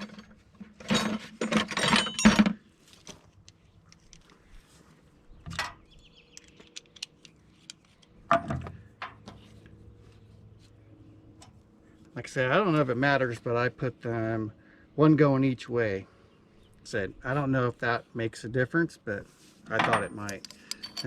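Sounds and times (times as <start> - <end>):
metal parts and tools clinking: 0.0 - 4.4, 5.6 - 8.6, 19.7 - 21.0.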